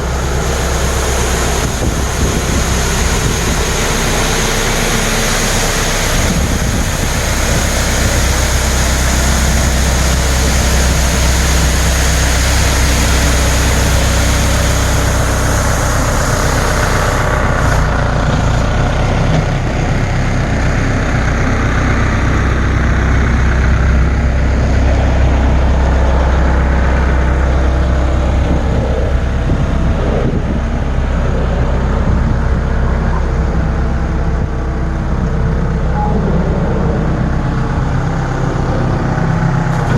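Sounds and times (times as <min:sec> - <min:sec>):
heavy vehicle engine humming: 0:00.0 - 0:39.9.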